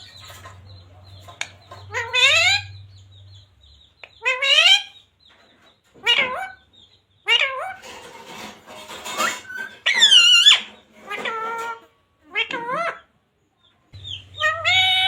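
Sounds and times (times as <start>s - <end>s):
parrot calling: 1.7s - 3.0s, 4.0s - 5.1s, 6.0s - 7.9s, 9.0s - 13.1s, 14.0s - 15.0s.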